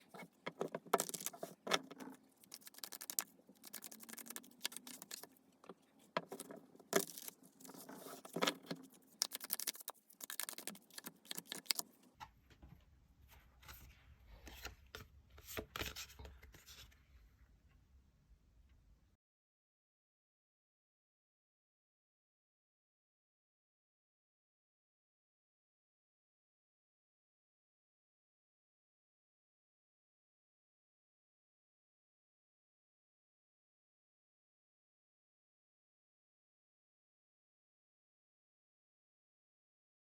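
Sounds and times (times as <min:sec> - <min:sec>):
cards being shuffled: 0:00.1 - 0:05.4, 0:06.1 - 0:12.0.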